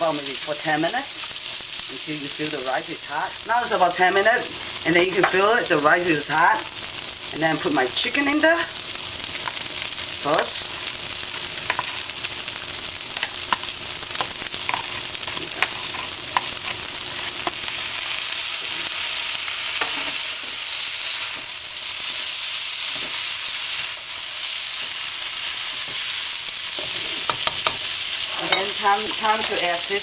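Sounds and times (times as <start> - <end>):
food sizzling in a wok: 0.0 - 30.0
utensil scraping a wok: 9.4 - 12.3, 13.1 - 30.0.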